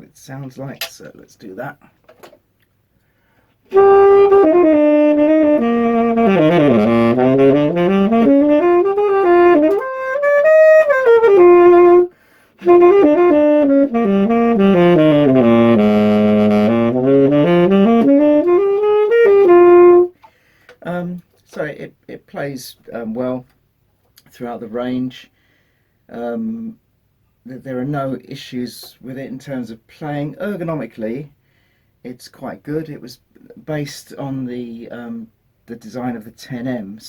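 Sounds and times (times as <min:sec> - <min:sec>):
tenor saxophone playing runs: 0:03.7 - 0:20.2.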